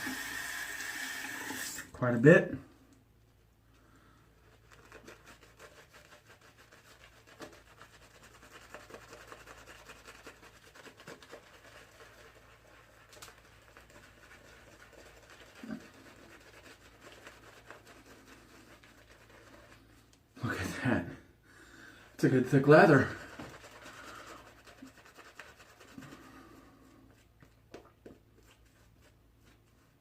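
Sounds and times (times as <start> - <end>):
shaving brush scratching on skin: 4.4 - 20.2, 22.2 - 27.3, 28.4 - 30.0.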